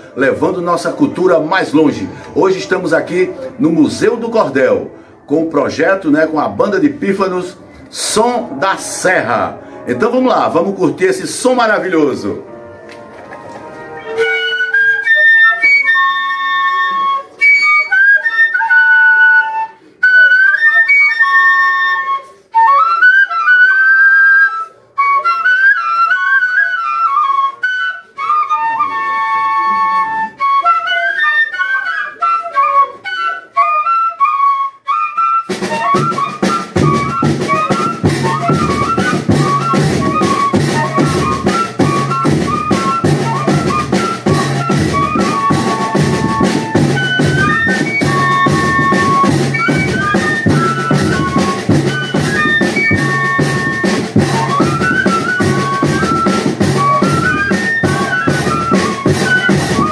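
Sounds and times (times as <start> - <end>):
fife melody: 0.0 - 59.9
drums fast beat: 35.5 - 59.9.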